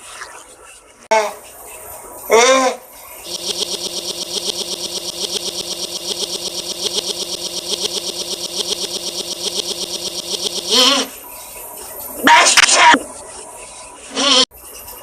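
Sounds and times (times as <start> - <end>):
stuttering looped voice fragment: 3.2 - 11.2.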